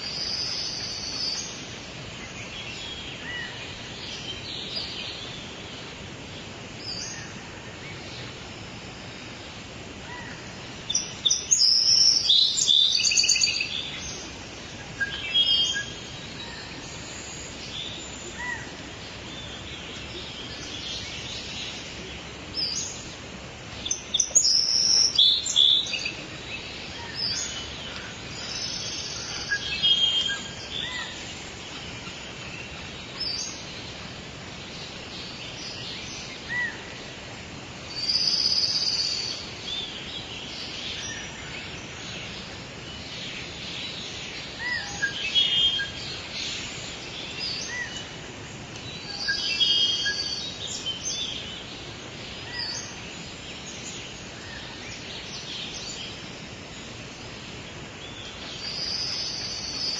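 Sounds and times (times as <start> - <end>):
songbirds singing and chirping: 0.0 - 59.9
steady background hiss: 0.0 - 59.9.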